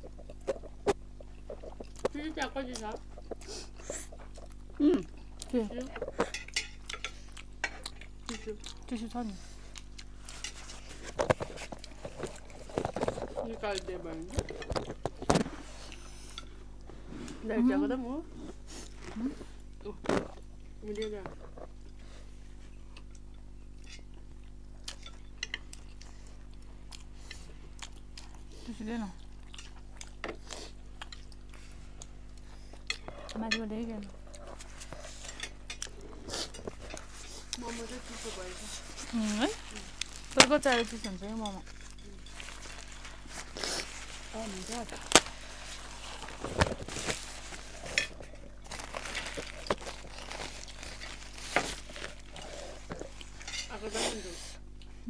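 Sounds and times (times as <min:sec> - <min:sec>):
faint rustling: 0:36.5 - 0:53.6.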